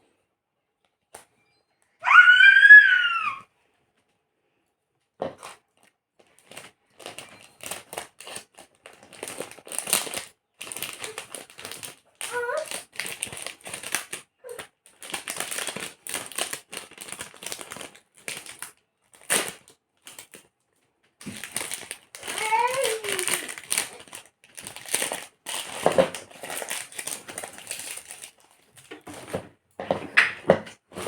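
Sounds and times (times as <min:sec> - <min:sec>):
packaging crinkling: 0:05.4 - 0:20.5, 0:21.2 - 0:29.4.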